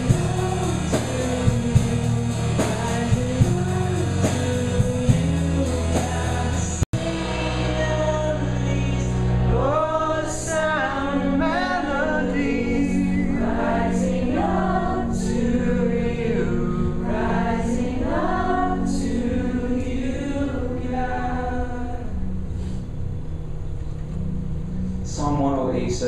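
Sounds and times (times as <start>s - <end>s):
voices singing together: 0.0s - 22.4s
sustained low accompaniment: 0.0s - 26.0s.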